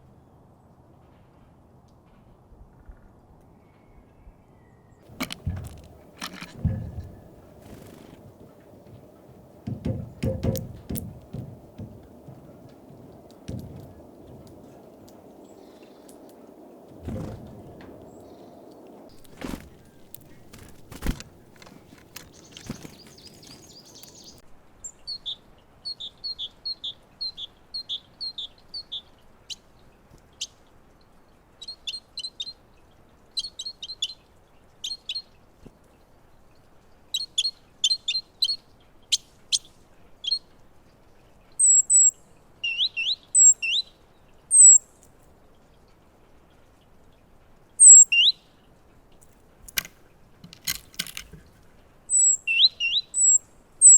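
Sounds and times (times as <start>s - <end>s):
sharp knocks: 5.1s - 15.2s
birds calling: 5.1s - 24.4s, 41.6s - 43.8s, 44.5s - 44.8s, 47.8s - 48.3s, 49.6s - 53.9s.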